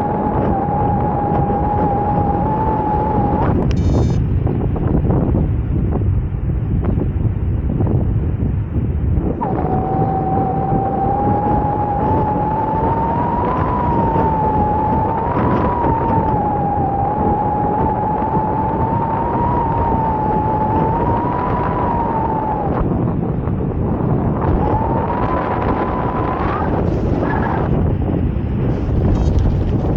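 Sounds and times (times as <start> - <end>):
variometer tone: 0.0 - 4.3
wind on microphone: 0.0 - 29.9.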